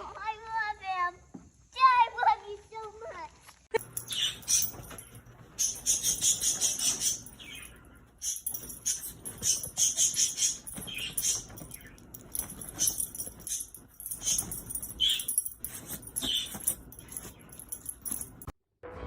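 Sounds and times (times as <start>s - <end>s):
dog collar tags jingling: 3.8s - 18.5s
dog sounds: 3.9s - 18.5s.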